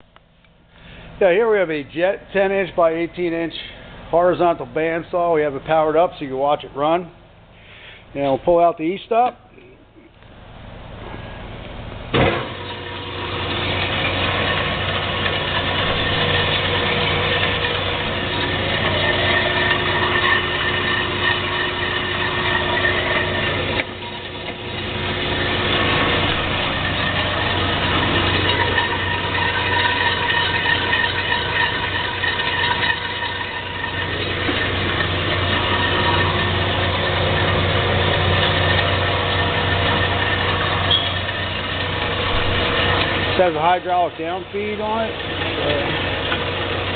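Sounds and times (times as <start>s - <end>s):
band saw running with whine: 12.1s - 46.9s.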